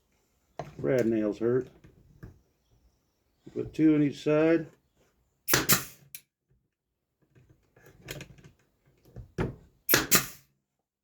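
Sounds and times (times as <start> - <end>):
faint knocks and handling: 0.0 - 3.8, 6.5 - 9.7
nail gun shots: 5.5 - 6.2, 9.9 - 10.5.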